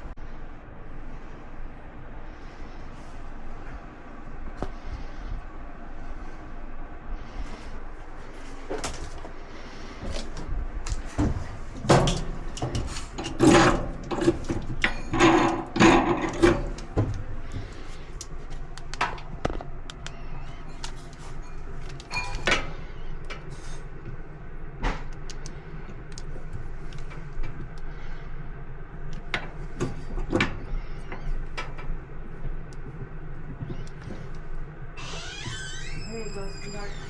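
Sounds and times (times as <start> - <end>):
clatter of parts and tools: 8.4 - 23.9.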